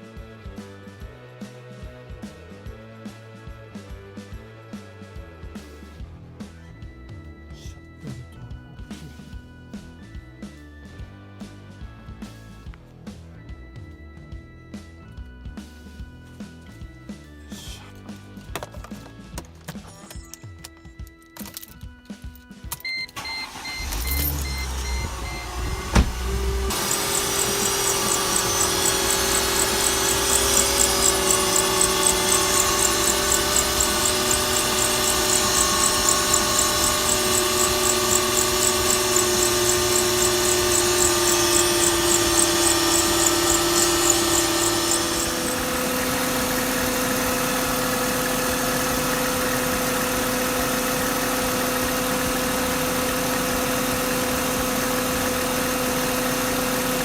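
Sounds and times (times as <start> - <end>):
car engine idling: 23.2 - 57.0
rapid high ticking: 26.4 - 47.5.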